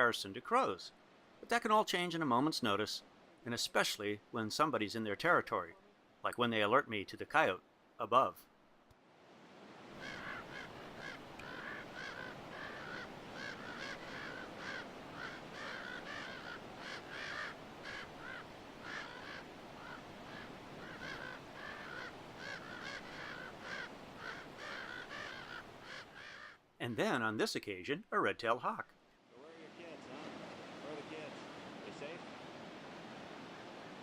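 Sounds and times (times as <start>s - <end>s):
steady background hiss: 0.0s - 34.0s
ravens giving alarm calls: 9.9s - 26.7s.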